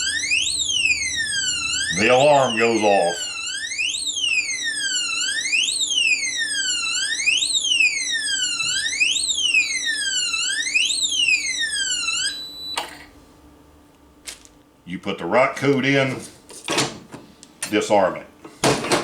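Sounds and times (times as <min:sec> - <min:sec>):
electronic alarm siren: 0:00.0 - 0:13.1.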